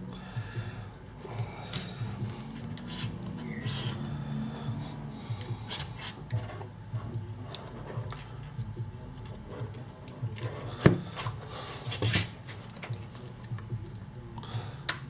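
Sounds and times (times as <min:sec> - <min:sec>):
hip-hop track with low beat: 0:00.0 - 0:15.0
rubbing and scraping plastic: 0:01.3 - 0:04.1, 0:04.9 - 0:13.7.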